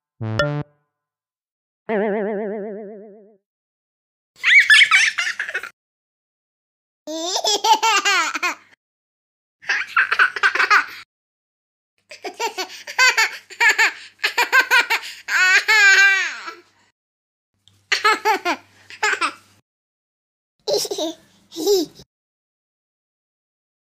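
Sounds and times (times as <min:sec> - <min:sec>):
cartoon laughter: 0:04.4 - 0:05.7.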